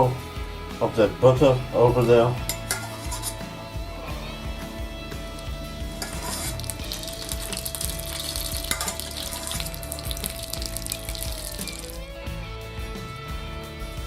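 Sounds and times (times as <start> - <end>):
butter sizzling in a frying pan: 5.3 - 12.2.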